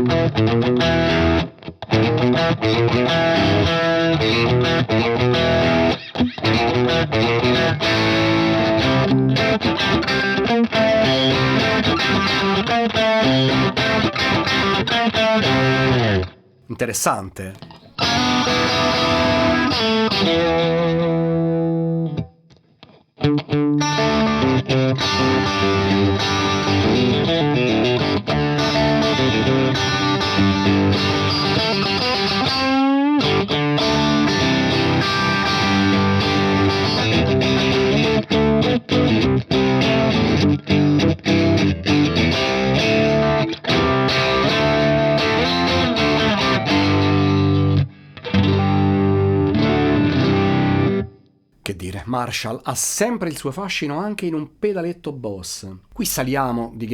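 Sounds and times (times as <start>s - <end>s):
overdriven electric guitar: 0.0s - 14.7s, 23.3s - 51.2s.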